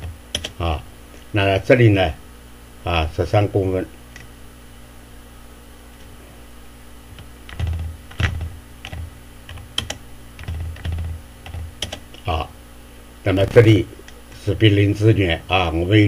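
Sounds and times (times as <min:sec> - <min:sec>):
keyboard keystrokes: 0:00.0 - 0:00.6, 0:07.2 - 0:12.0.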